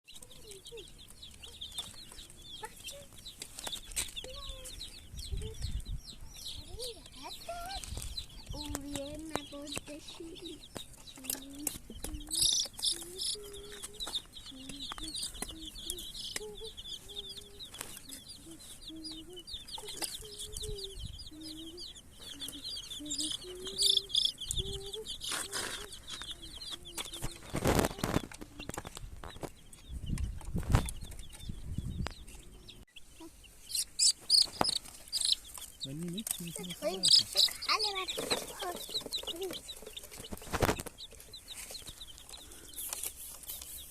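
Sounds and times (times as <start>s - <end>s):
baby chicks peeping: 0.0s - 43.9s
hen clucking: 0.1s - 43.9s
rustling: 6.6s - 29.6s, 33.5s - 43.9s.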